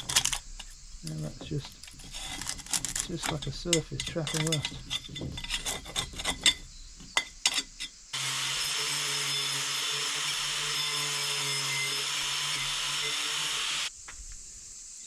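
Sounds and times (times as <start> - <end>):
power tool running: 8.2 - 13.9.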